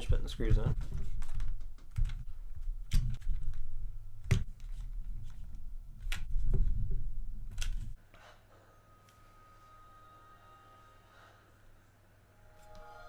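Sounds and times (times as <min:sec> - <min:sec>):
low rubbing noise: 0:08.0 - 0:13.0.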